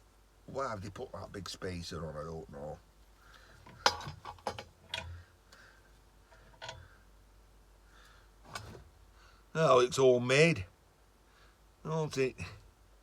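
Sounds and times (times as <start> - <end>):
sharp clicks and light knocks: 3.4 - 5.7, 6.3 - 6.9.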